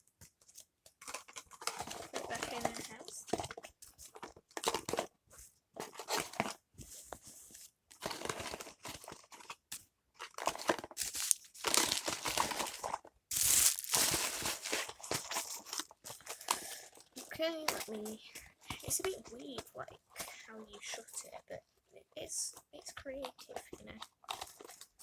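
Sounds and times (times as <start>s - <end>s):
paper packaging crinkling: 1.1s - 5.1s, 10.2s - 19.1s.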